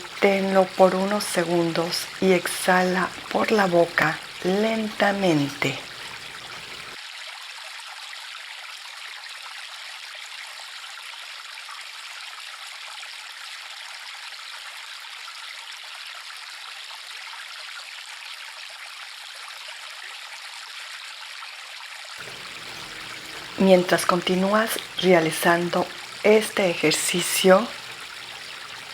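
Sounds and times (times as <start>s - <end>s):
river water flowing: 0.0s - 7.0s, 22.2s - 28.9s.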